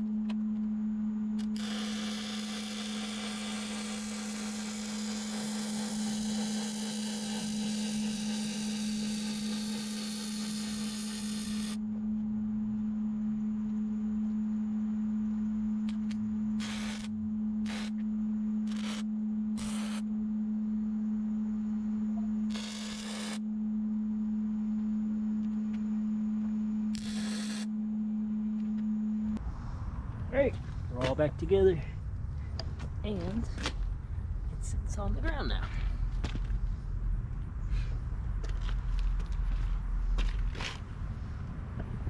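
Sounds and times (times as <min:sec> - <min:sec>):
steady electrical hum: 0:00.0 - 0:42.0
continuous welding: 0:01.4 - 0:11.8, 0:15.9 - 0:18.0, 0:18.6 - 0:20.1, 0:22.5 - 0:23.4, 0:27.0 - 0:27.7
short tack welds: 0:01.4 - 0:11.8, 0:15.9 - 0:18.0, 0:18.7 - 0:19.0, 0:19.6 - 0:20.0, 0:22.5 - 0:23.4, 0:27.0 - 0:27.7.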